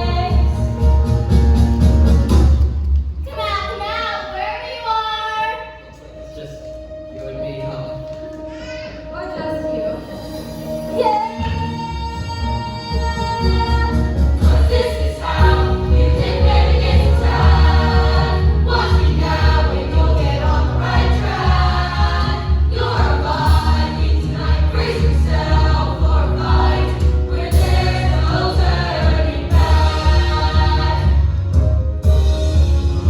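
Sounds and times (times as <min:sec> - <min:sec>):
steady bass accompaniment: 0:00.0 - 0:03.1, 0:09.2 - 0:33.0
choir singing: 0:12.5 - 0:31.6.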